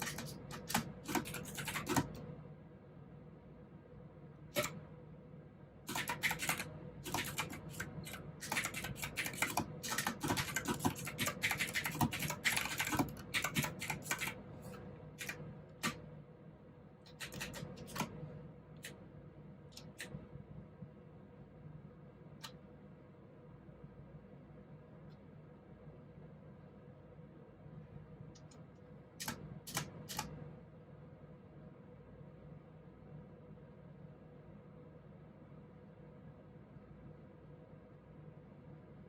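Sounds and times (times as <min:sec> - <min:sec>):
mechanical keyboard typing: 0:00.0 - 0:02.3, 0:04.5 - 0:04.8, 0:05.9 - 0:14.4, 0:15.2 - 0:16.0, 0:17.1 - 0:18.2, 0:29.2 - 0:30.4.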